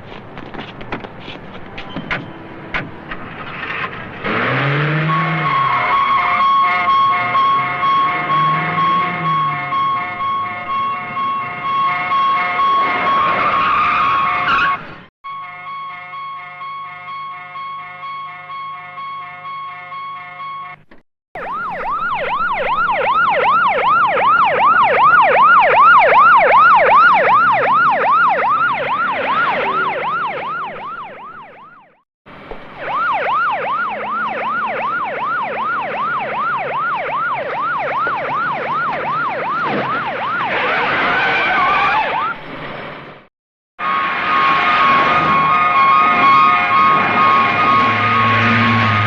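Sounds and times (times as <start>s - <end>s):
siren yelping: 4.3s - 20.8s, 21.4s - 32.0s, 32.7s - 42.4s, 43.8s - 49.0s.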